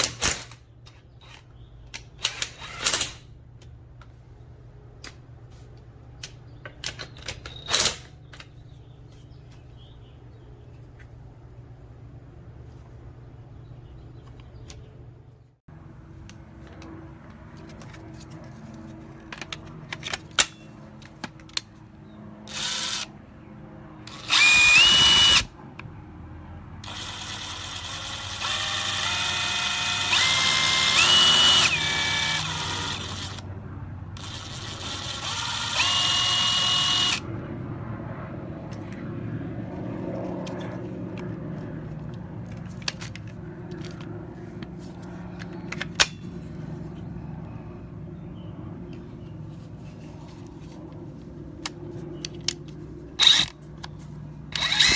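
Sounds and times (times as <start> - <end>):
cordless impact wrench whining: 22.4 - 23.2, 24.0 - 26.0, 26.8 - 33.5, 34.2 - 37.3, 52.4 - 54.9.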